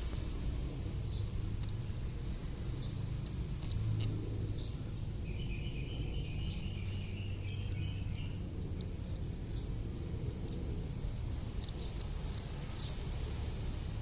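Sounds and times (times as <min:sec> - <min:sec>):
kitten crunching raw fish: 0:00.0 - 0:05.2
low background rumble: 0:00.0 - 0:14.0.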